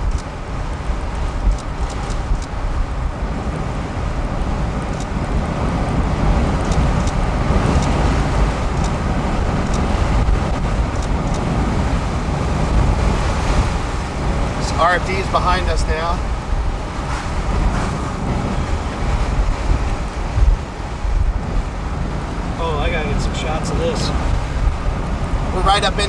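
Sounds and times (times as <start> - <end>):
road and wind noise in car: 0.0 - 26.0
faint ticks: 1.1 - 2.6, 8.8 - 9.0.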